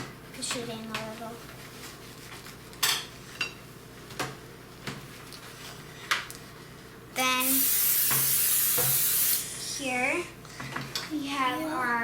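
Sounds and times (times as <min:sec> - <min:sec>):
loud steady hiss: 0:07.4 - 0:09.7.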